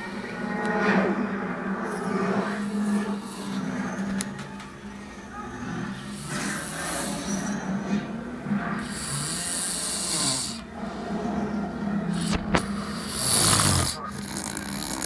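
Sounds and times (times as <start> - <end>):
man snoring: 8.8 - 10.7, 12.1 - 15.0.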